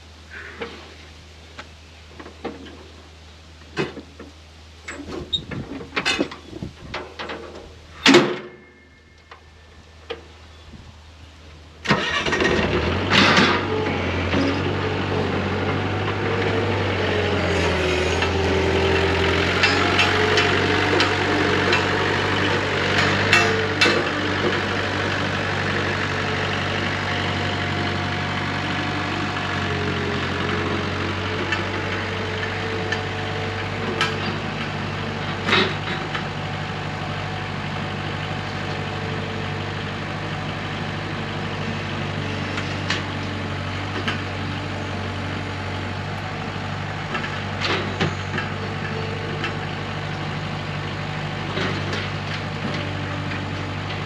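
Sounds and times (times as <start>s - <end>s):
ride-on machine engine running: 11.9s - 54.0s.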